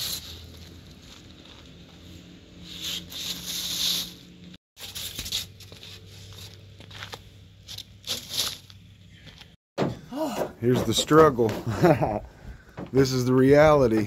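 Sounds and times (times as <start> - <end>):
rustling and crinkling handling: 0.0 - 2.4.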